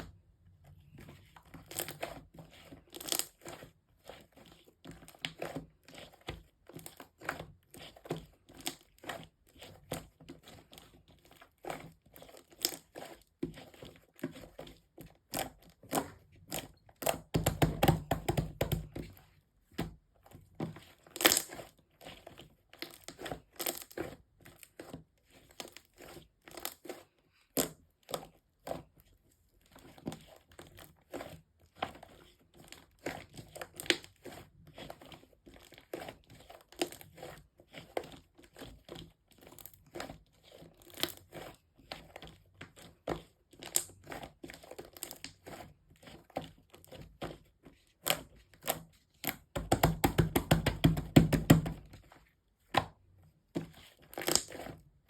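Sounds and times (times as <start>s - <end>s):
slime crackling and popping: 21.2s - 21.5s, 54.2s - 54.7s.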